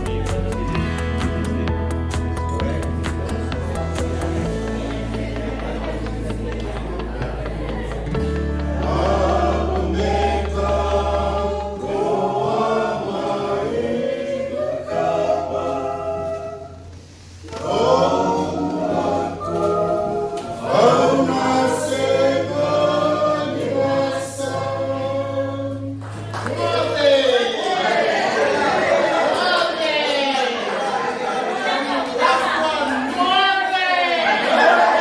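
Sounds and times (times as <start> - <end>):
sustained low bass notes: 0.0 - 13.1
choir singing: 2.6 - 35.0.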